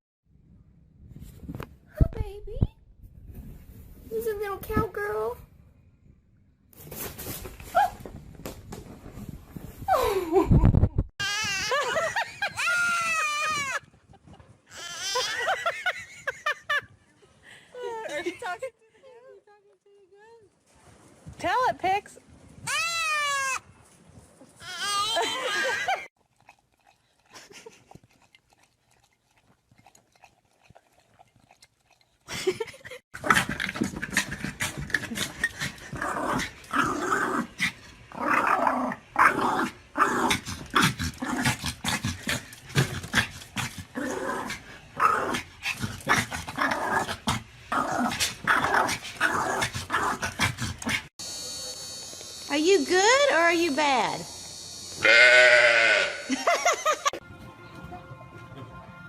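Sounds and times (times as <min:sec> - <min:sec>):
dog grumbling and growling: 0:33.2 - 0:51.1.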